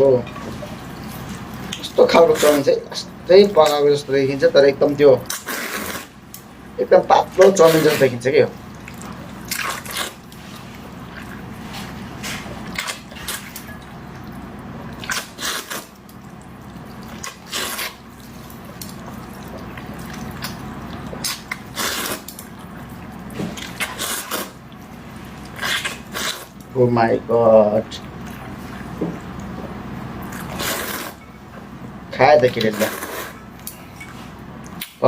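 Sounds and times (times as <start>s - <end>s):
slurping noodles: 5.2s - 6.2s, 7.4s - 13.7s, 14.9s - 16.0s, 16.7s - 24.6s, 25.4s - 26.6s, 30.3s - 31.2s, 32.6s - 33.5s.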